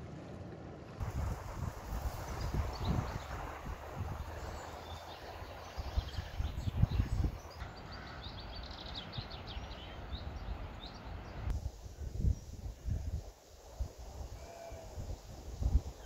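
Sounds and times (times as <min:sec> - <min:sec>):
wind buffeting microphone: 0:01.0 - 0:16.0
songbird chirping and trilling: 0:04.3 - 0:11.5.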